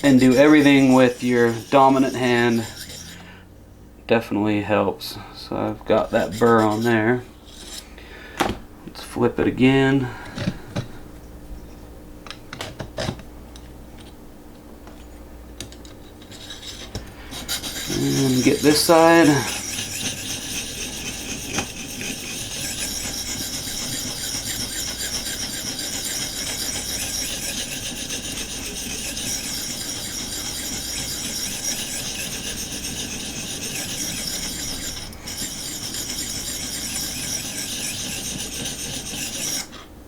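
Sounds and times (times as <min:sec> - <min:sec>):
sharpening stone rubbing knife edge: 0:00.0 - 0:03.2, 0:16.2 - 0:39.7.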